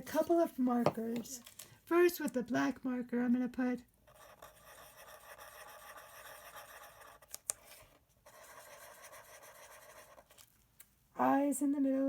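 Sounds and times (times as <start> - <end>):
marker drawing on paper: 4.1 - 10.4.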